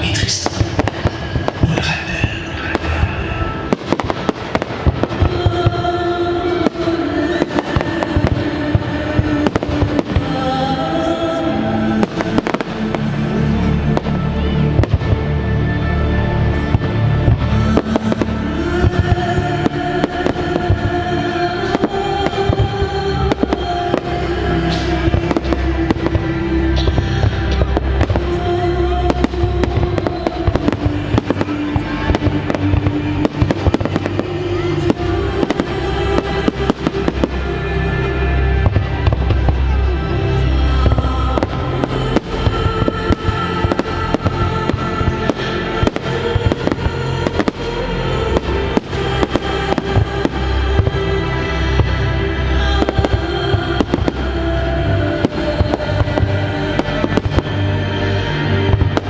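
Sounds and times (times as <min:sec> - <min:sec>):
fireworks bangs and booms: 0:00.0 - 0:10.4, 0:14.7 - 0:15.2, 0:29.1 - 0:37.4, 0:38.6 - 0:39.8, 0:40.8 - 0:47.7, 0:58.7 - 0:59.0
music with held notes: 0:00.0 - 0:59.0.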